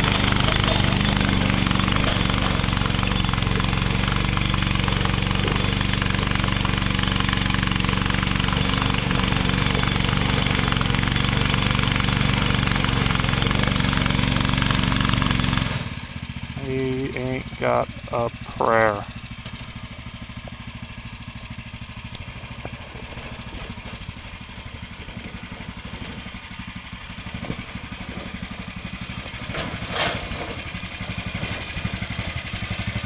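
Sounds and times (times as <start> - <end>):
utility vehicle engine running: 0.0 - 33.0.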